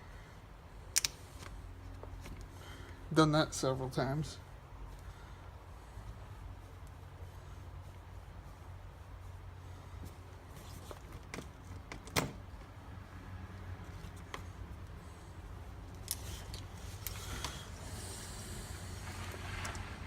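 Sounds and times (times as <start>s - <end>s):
low steady hum: 0.0s - 20.0s
small parts and tools clicking: 0.9s - 2.5s, 15.9s - 17.6s.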